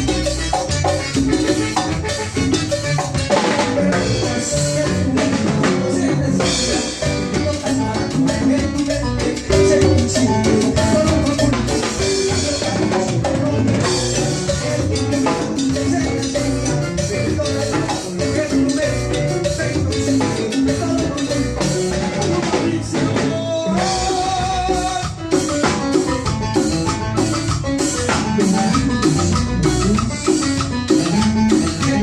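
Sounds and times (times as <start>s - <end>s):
salsa dance music: 0.0s - 32.0s.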